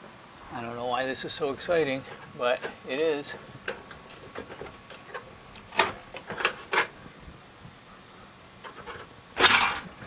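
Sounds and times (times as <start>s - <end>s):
metal parts clicking and knocking: 8.6s - 9.9s.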